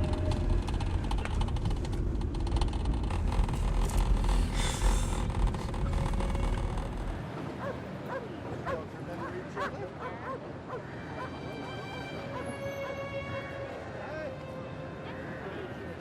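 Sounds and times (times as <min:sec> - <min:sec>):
car driving rumble: 0:00.0 - 0:08.4.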